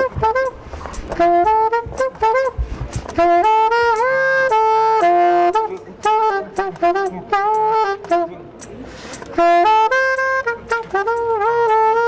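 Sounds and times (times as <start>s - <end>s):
solo saxophone melody: 0.0s - 12.0s.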